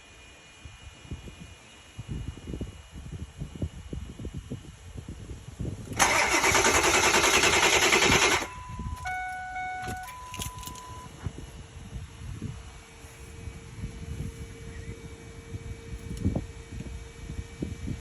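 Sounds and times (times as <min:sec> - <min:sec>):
starter cranking engine: 0:05.9 - 0:09.1
short electronic chime tones: 0:08.4 - 0:11.1.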